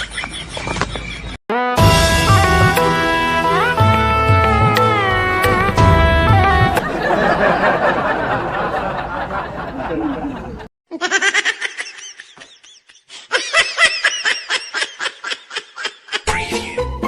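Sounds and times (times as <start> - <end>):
high-pitched laughter: 9.2 - 16.6.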